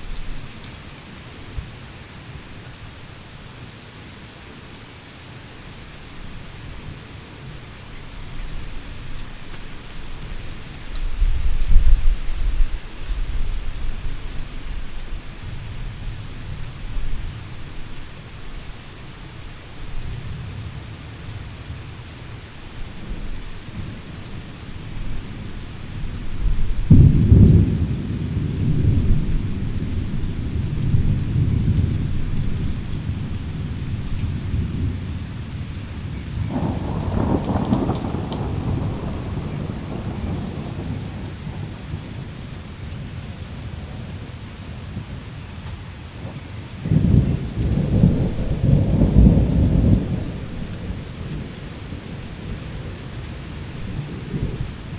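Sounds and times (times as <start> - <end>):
heavy rain falling: 0.0 - 54.9
thunder rumbling: 8.2 - 18.1, 22.7 - 54.9.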